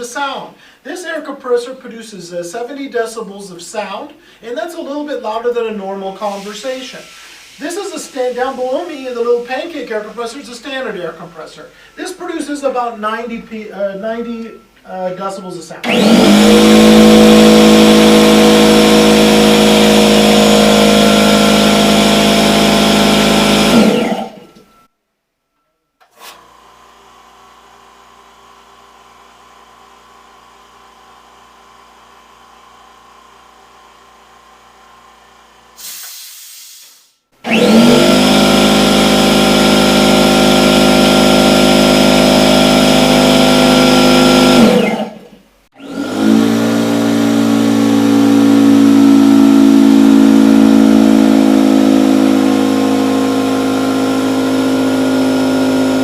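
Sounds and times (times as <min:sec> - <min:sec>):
loud air compressor drone: 0:06.2 - 0:10.6, 0:15.8 - 0:24.8, 0:26.2 - 0:56.0.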